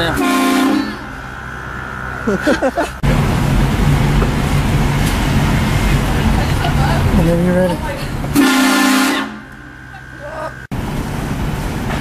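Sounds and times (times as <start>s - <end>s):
loud vehicle rumble: 0.0s - 12.0s
short horn blast: 0.1s - 1.1s, 8.3s - 9.7s.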